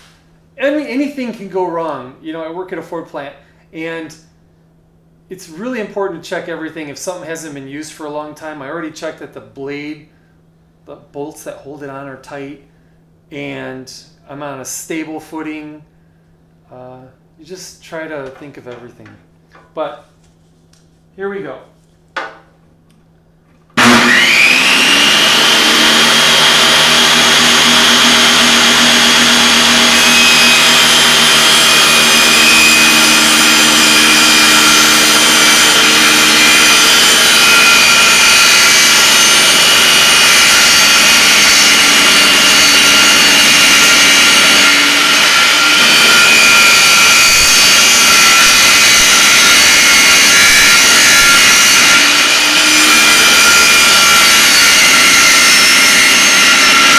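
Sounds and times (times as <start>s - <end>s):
table saw whining: 23.7s - 56.9s.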